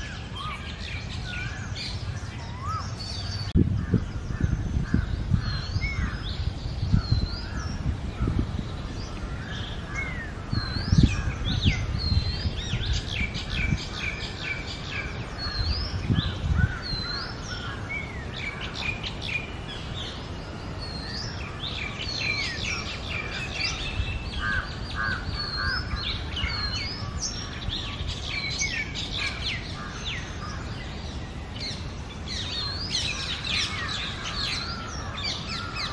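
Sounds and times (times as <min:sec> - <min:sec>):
bird singing whistles and chirps: 0:00.0 - 0:35.9.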